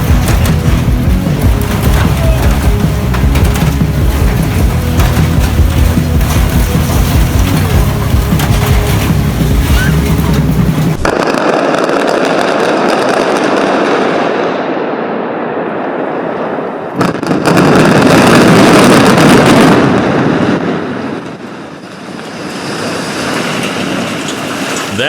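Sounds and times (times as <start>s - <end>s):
building collapsing roar: 0.0s - 12.0s, 14.3s - 25.0s
falling debris crackling: 0.0s - 14.2s, 17.0s - 25.0s.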